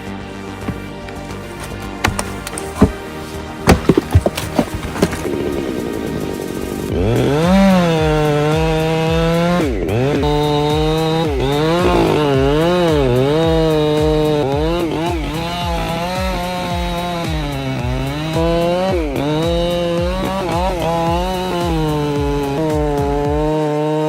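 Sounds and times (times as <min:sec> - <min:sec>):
chainsaw cutting wood: 0:00.7 - 0:06.0, 0:13.3 - 0:24.0.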